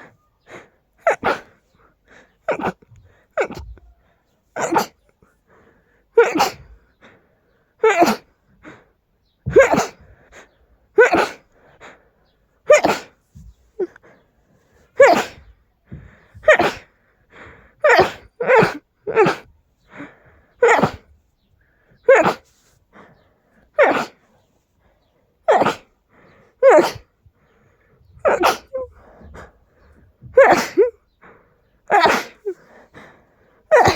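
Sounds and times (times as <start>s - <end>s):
person sneezing loudly: 1.0s - 1.6s, 2.5s - 3.9s, 4.6s - 5.0s, 6.2s - 6.8s, 7.8s - 8.3s, 9.4s - 10.1s, 11.0s - 11.5s, 12.7s - 14.0s, 15.0s - 16.9s, 17.8s - 19.5s, 20.6s - 21.1s, 22.1s - 22.8s, 23.7s - 24.3s, 25.5s - 25.9s, 26.6s - 27.1s, 28.2s - 29.4s, 30.2s - 31.0s, 31.9s - 32.7s.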